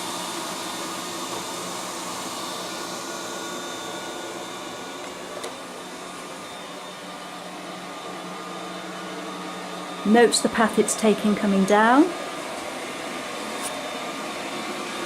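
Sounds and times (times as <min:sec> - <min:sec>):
robot vacuum cleaner humming: 0:00.0 - 0:15.0.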